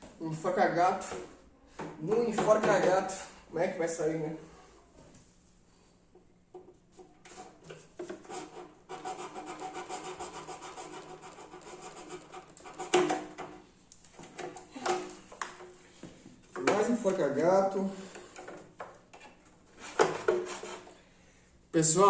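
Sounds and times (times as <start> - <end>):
rasping metal scrape: 7.2 - 13.0, 19.7 - 20.9.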